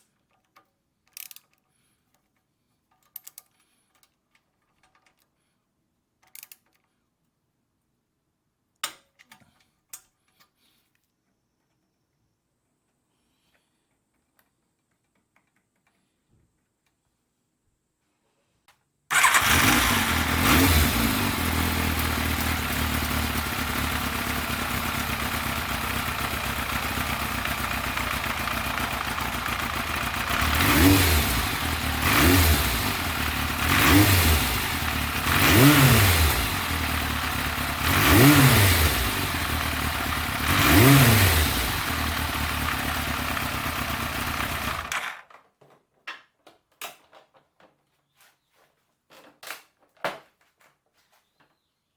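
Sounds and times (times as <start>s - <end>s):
motorcycle engine revving: 19.1s - 45.0s
motorcycle engine starting and idling: 19.1s - 45.4s.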